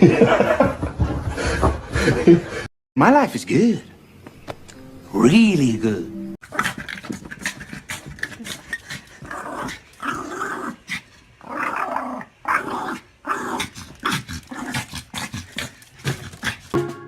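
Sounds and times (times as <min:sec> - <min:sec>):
dog growling: 0:06.4 - 0:16.8.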